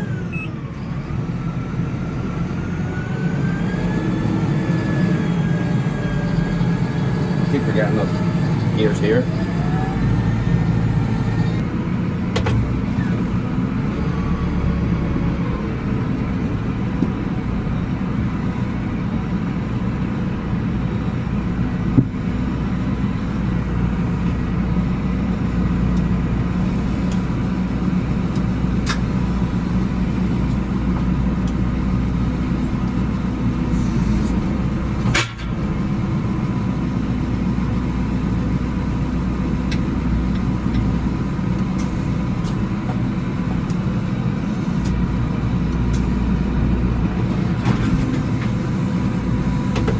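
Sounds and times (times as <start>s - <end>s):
tractor engine running: 0.0s - 49.9s.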